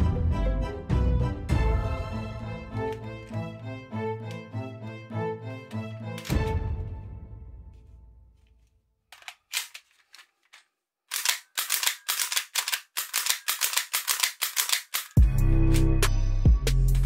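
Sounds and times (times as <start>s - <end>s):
music: 0.0s - 8.3s, 15.2s - 17.0s
toy gun mechanism clicking: 5.7s - 6.5s, 9.1s - 15.2s.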